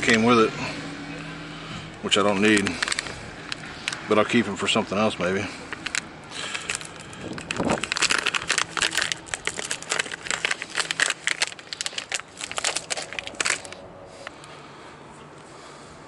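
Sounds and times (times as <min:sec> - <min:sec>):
plastic packaging crinkling: 0:02.1 - 0:04.4, 0:05.6 - 0:13.9.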